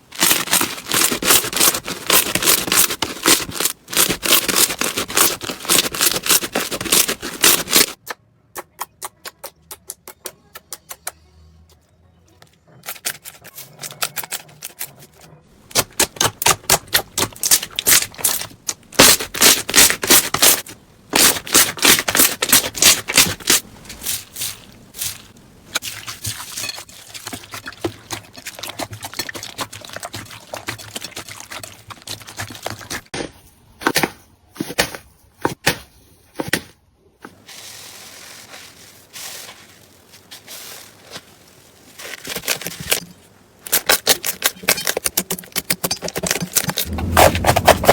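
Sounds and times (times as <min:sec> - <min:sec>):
crunchy slime crackling and popping: 0:15.6 - 0:26.9, 0:37.7 - 0:47.9.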